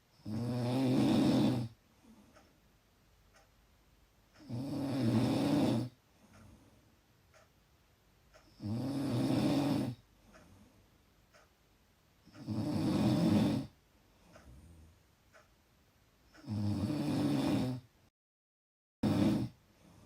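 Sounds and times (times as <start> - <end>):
loud buzzing snores: 0.2 - 1.8, 4.4 - 6.0, 8.5 - 10.0, 12.4 - 13.8, 16.4 - 17.9, 19.0 - 19.6.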